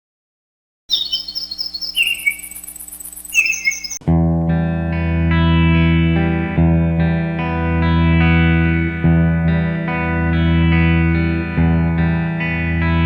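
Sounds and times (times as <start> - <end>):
bird-like chirping: 0.9 - 4.0
rock song with distorted guitar: 4.2 - 13.0.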